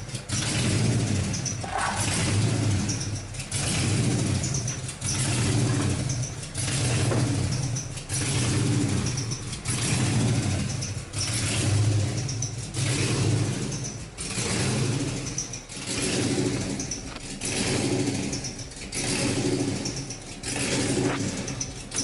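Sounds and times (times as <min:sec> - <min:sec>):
car engine running: 0:00.0 - 0:22.0.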